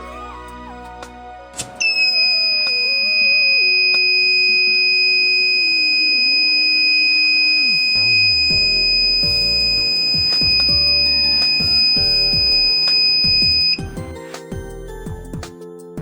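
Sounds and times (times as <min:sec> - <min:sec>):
high-pitched alarm buzzer: 0:02.4 - 0:13.7.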